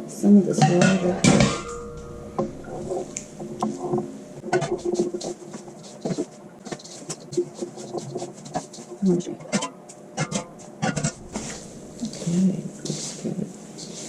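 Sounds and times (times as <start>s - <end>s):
wet food being stirred: 0.6s - 14.0s.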